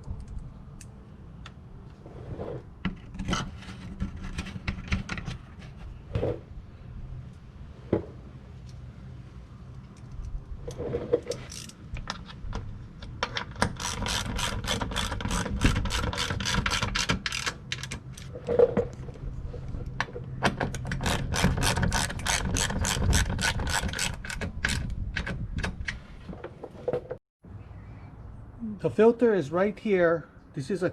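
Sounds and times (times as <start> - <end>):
socket ratchet clicking fast: 13.6 - 17.9.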